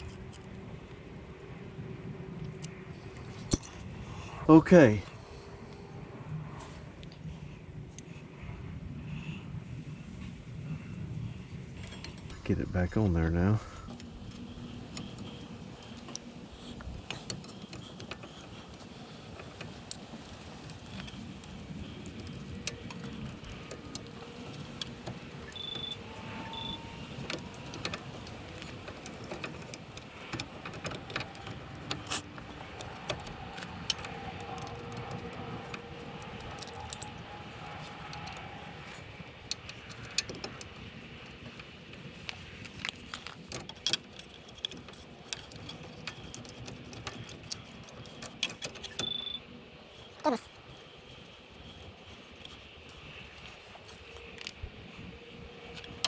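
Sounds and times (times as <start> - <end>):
metal tools and parts clinking: 0.0 - 0.6, 2.5 - 3.9, 13.9 - 54.6.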